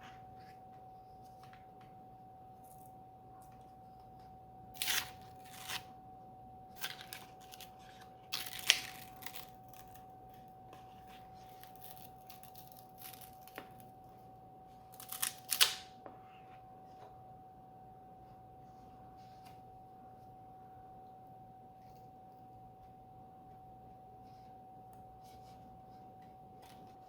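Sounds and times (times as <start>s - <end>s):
faint steady tone: 0.0s - 4.8s, 16.0s - 27.0s.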